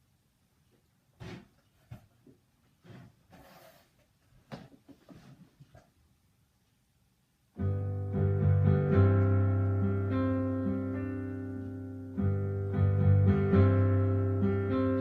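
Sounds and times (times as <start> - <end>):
slow solo piano chords: 7.6 - 15.0.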